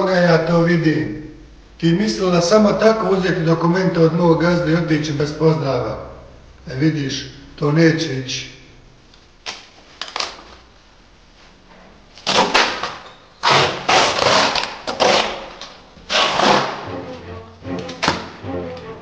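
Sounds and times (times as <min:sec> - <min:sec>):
music: 0:16.1 - 0:19.0.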